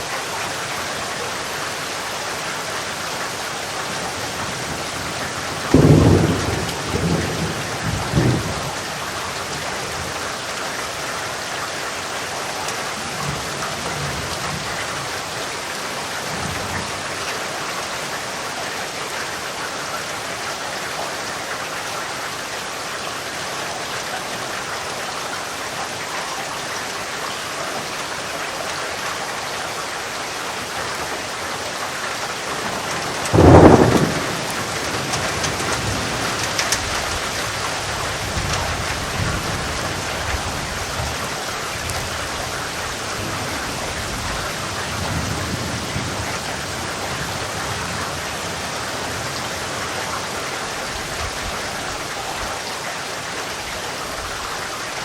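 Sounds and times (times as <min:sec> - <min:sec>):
steady rain falling: 0:00.0 - 0:55.0
thunder rumbling: 0:04.3 - 0:08.9, 0:32.5 - 0:42.4
loud thunder clap: 0:05.7 - 0:08.7, 0:32.7 - 0:37.2.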